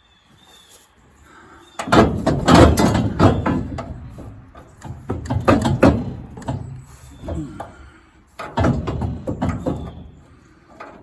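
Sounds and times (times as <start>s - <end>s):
metal clanks and scrapes: 1.8s - 7.7s.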